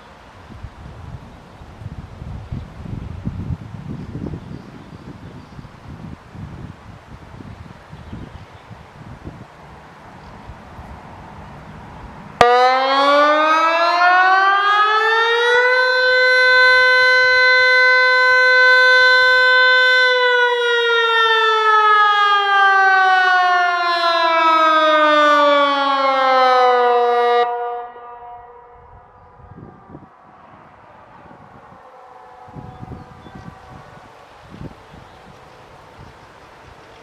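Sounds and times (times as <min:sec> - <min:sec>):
electronic siren tone: 0:12.4 - 0:35.0.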